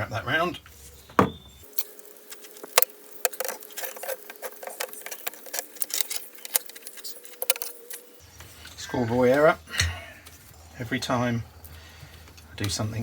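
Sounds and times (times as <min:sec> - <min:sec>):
sharp knocks: 0:01.1 - 0:01.6
cable clicking and scratching on shaft: 0:01.7 - 0:08.2.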